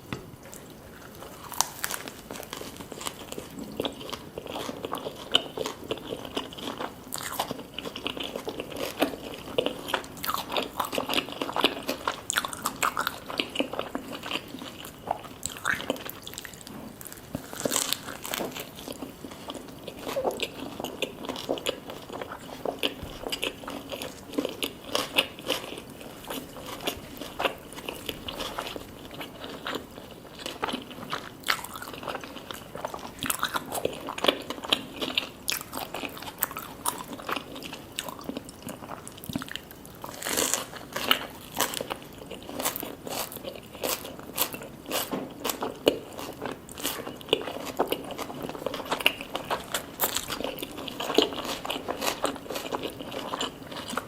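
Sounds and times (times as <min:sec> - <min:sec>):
person chewing crunchy food: 0:00.0 - 0:54.0.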